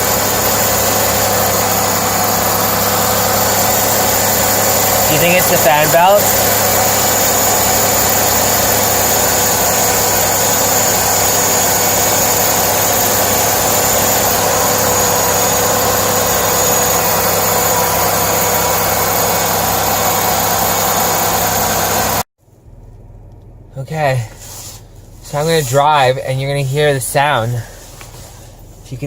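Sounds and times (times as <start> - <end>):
high thin whine: 0.0 - 22.2
car engine idling: 0.0 - 29.0.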